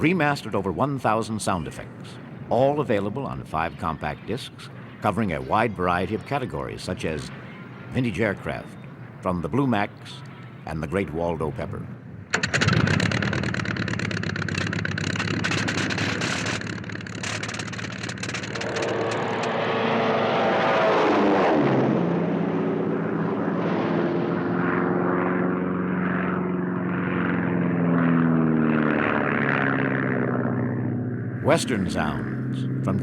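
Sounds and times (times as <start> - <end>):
propeller aircraft engine drone: 0.0 - 33.0
crackling rattle: 12.3 - 19.6.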